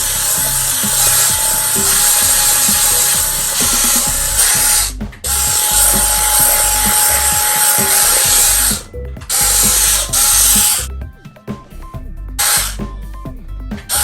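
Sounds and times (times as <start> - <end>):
suction fan hissing and whining: 0.0 - 10.9.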